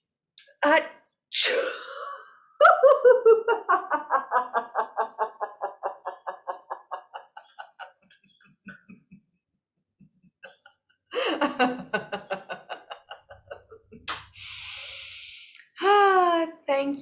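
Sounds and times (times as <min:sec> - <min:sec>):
woman pretend sneezing: 0:01.4 - 0:01.9
woman laughing: 0:02.6 - 0:09.3, 0:10.2 - 0:14.1.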